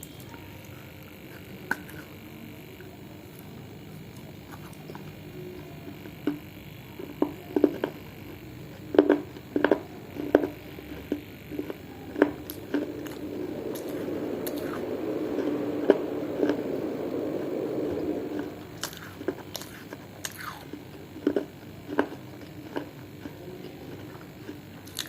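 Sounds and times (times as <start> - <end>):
crunching and chewing: 0.0 - 2.3, 2.9 - 25.0.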